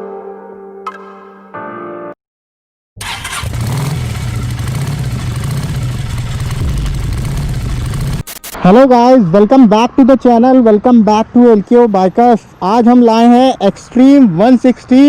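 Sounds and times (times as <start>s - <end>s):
motorcycle engine running: 3.0s - 8.3s.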